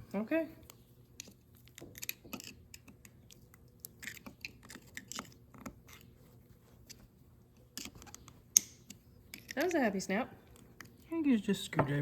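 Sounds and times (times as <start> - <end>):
metal parts clicking and scraping: 1.2 - 6.1.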